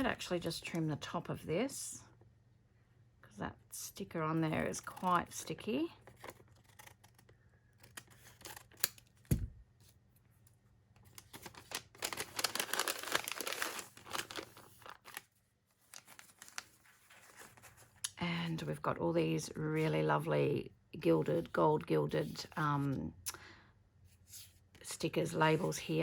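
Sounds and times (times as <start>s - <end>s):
dull thump: 9.3s - 9.6s
cellophane crinkling: 11.0s - 18.0s.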